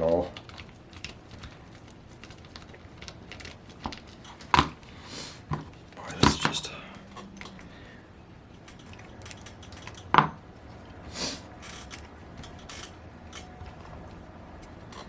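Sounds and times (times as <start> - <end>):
metal tools clicking and tapping: 11.6 - 15.0.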